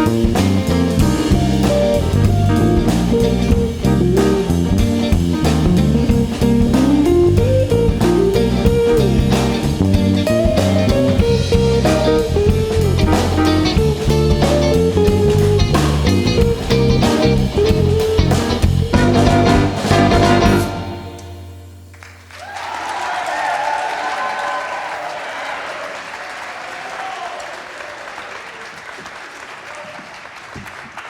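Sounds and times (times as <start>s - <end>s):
electric bass: 0.0s - 21.9s
guitar melody: 0.0s - 21.9s
drum kit: 0.0s - 22.0s.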